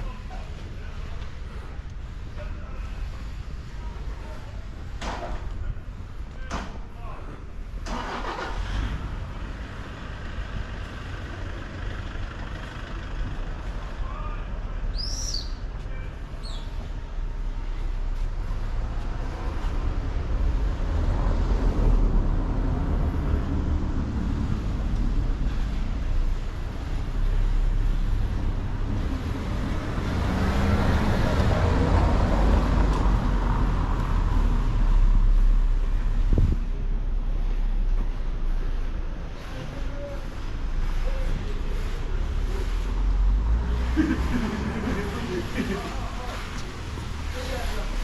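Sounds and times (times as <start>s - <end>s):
low traffic rumble: 0.0s - 48.0s
vehicles passing close by: 0.0s - 48.0s.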